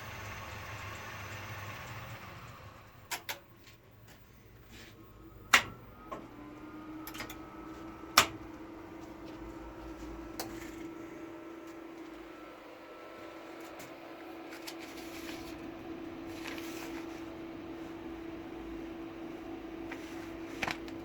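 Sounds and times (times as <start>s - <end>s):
steady hum: 0.0s - 21.0s.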